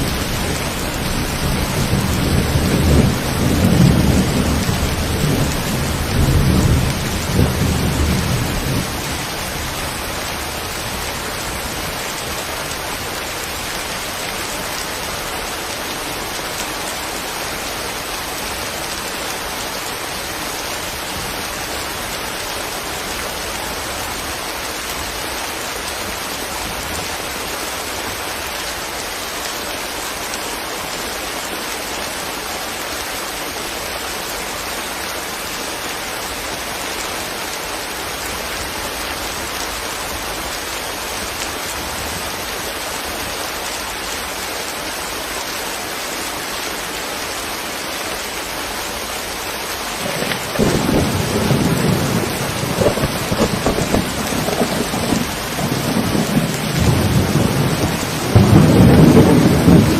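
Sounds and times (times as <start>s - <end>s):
steady rain falling: 0.0s - 59.9s
thunder rumble: 50.0s - 59.9s.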